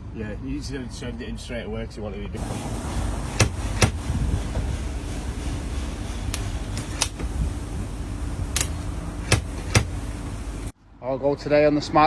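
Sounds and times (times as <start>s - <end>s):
wind rumble on microphone: 3.6s - 6.0s, 6.6s - 8.7s.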